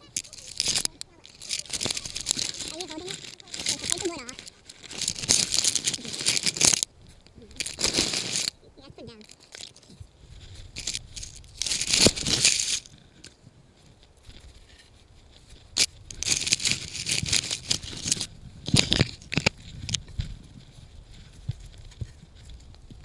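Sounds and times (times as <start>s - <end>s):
branches snapping: 0.0s - 8.6s, 10.6s - 13.4s
branches crunching and rustling in snow: 0.0s - 23.0s.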